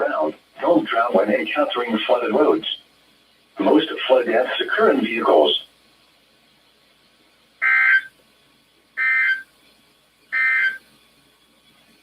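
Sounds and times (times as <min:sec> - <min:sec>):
harsh buzzing data bursts: 0:07.6 - 0:08.2, 0:09.0 - 0:09.5, 0:10.2 - 0:10.8.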